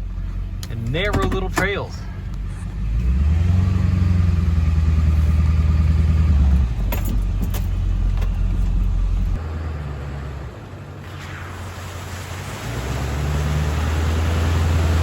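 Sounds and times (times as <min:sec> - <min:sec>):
pickup truck engine rumbling: 0:00.0 - 0:15.0.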